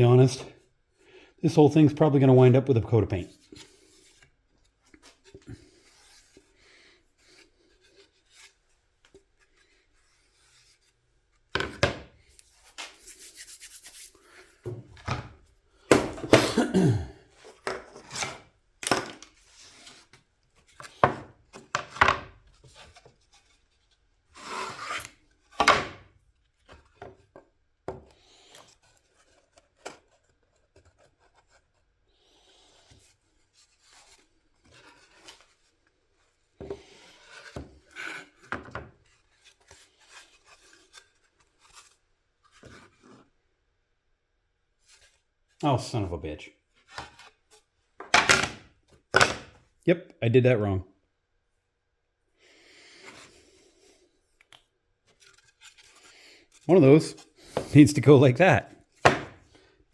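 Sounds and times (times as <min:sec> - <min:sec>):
rubbing and scraping on wood: 0:12.4 - 0:15.1.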